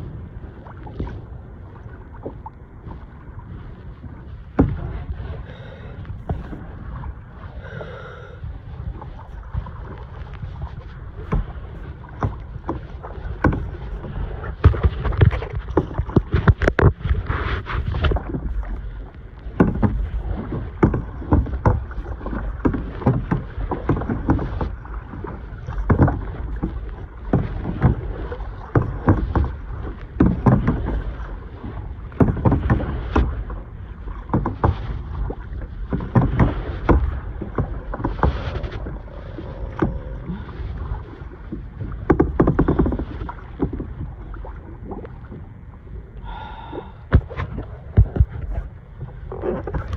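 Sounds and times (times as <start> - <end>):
wind rumble on microphone: 0.0 - 49.9
kayak paddle splashing in water: 8.8 - 45.5, 46.2 - 49.9.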